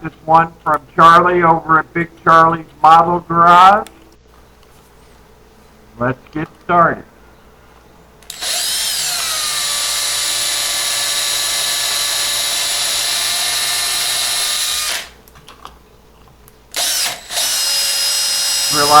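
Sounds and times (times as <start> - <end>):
electric drill whining: 8.2 - 15.2, 16.7 - 19.0.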